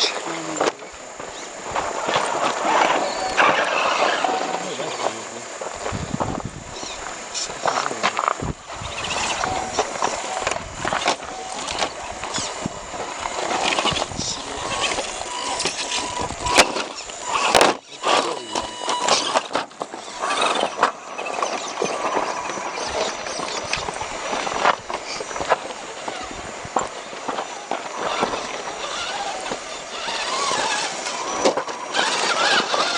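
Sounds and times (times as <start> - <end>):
crunching on rock and gravel: 0.0 - 32.9
faint electric motor whine: 0.0 - 32.9.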